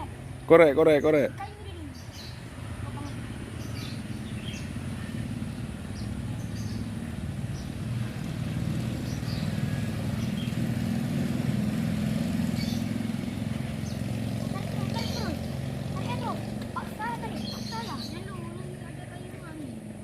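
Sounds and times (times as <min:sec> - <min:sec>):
small engine droning: 0:00.0 - 0:20.0
high bird chirps: 0:16.2 - 0:18.8.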